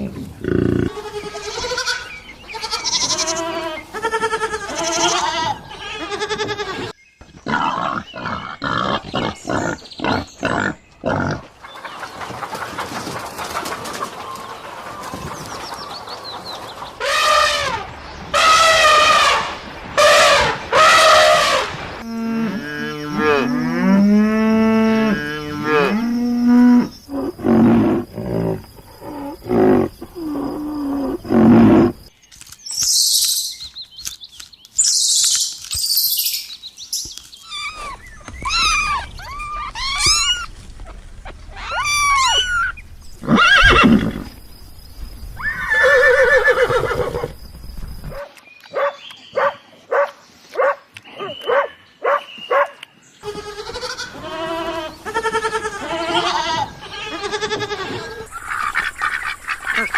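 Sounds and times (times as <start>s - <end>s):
pitched animal calls: 37.4s - 44.4s
fast high animal calls: 37.5s - 40.6s, 41.5s - 44.3s.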